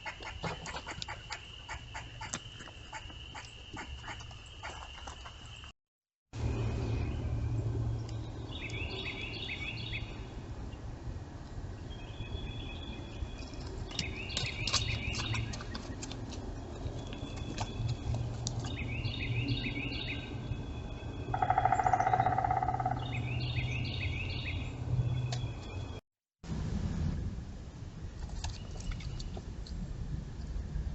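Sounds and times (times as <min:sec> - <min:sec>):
bird singing: 0:06.5 - 0:10.3, 0:11.8 - 0:26.0.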